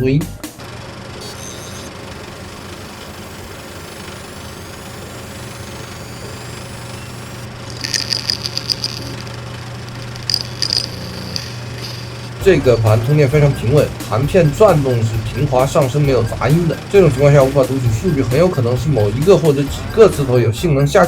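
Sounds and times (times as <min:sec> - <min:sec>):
hard drive spinning up: 0:00.6 - 0:20.4
light ticking: 0:00.6 - 0:20.4.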